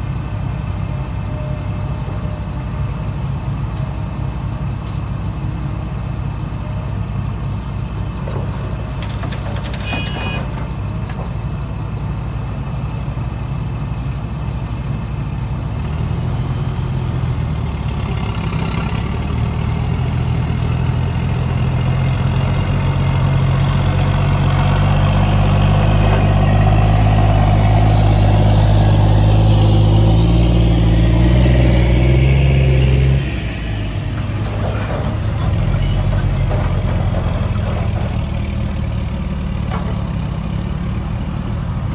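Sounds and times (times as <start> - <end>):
heavy diesel engine running: 0.0 - 41.9.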